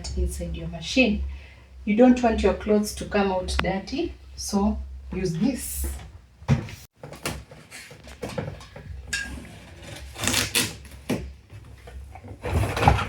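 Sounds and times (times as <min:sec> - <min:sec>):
packaging rustling and scraping: 0:07.0 - 0:13.0.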